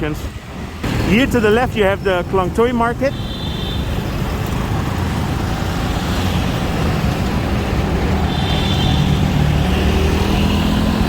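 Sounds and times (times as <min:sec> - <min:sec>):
vehicle road and engine noise: 0:00.0 - 0:11.0.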